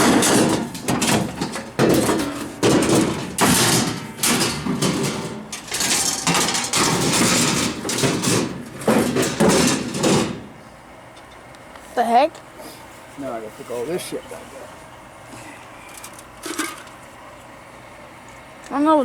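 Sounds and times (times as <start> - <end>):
motor parts knocking and clattering: 0.0 - 10.6.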